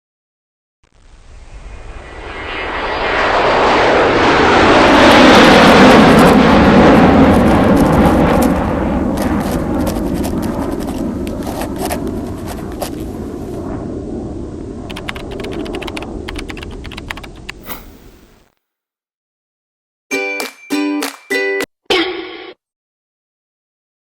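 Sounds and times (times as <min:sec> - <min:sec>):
airplane flying over: 0:01.3 - 0:18.4
clicks: 0:14.9 - 0:18.4.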